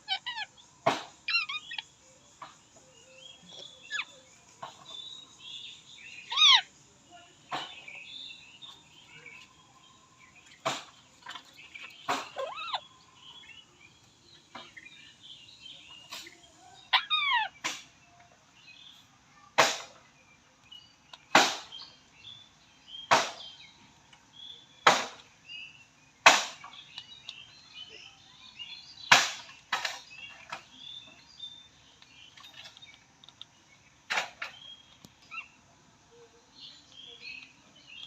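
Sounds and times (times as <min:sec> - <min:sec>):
parrot chirps rising and falling: 0:01.3 - 0:01.8, 0:12.3 - 0:12.8.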